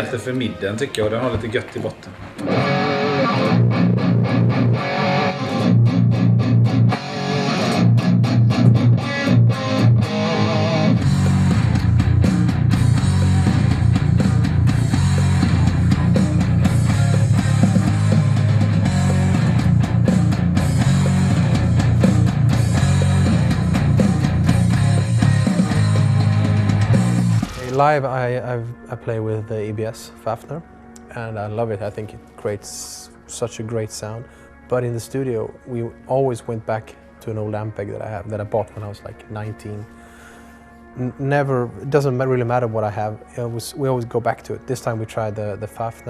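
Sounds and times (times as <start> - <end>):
heavy metal distorted guitars: 2.3 - 27.9.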